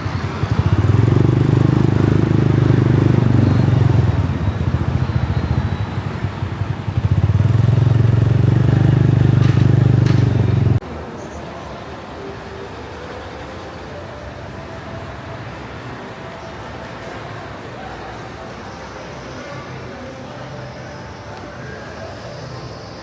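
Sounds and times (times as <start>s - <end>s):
motorbike engine drone: 0.0s - 10.8s.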